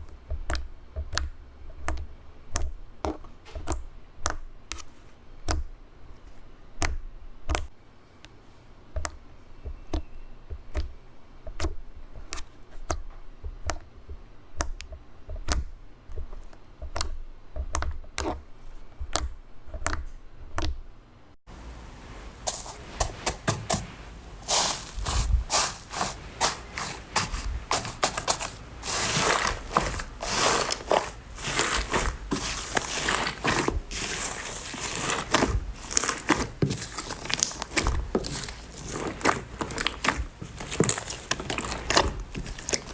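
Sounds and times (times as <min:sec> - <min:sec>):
slime clicking and popping: 0:00.0 - 0:05.7, 0:06.8 - 0:07.7, 0:09.0 - 0:13.9, 0:14.5 - 0:18.4, 0:19.0 - 0:20.8, 0:30.3 - 0:42.9.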